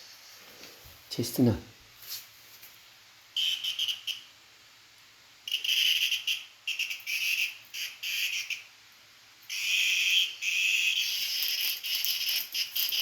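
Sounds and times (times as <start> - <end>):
cicada buzzing: 5.5 - 8.7, 9.5 - 13.0.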